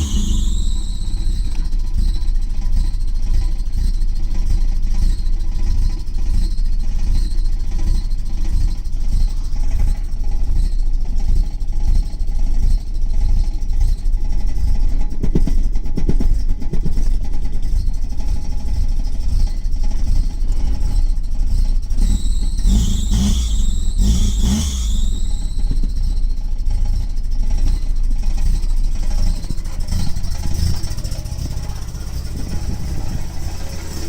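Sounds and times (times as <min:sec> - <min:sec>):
engine misfiring: 0:00.0 - 0:34.0
high-pitched whine: 0:22.0 - 0:27.0.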